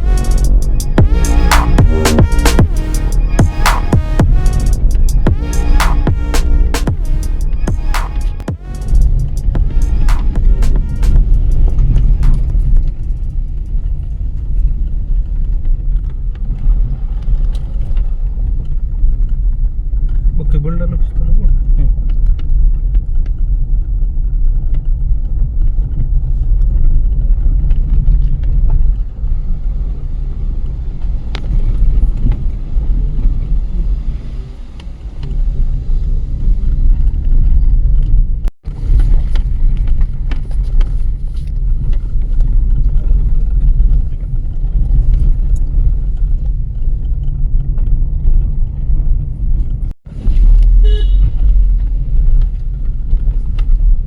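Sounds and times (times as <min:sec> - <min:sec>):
car road and engine rumble: 0:00.0 - 0:54.0.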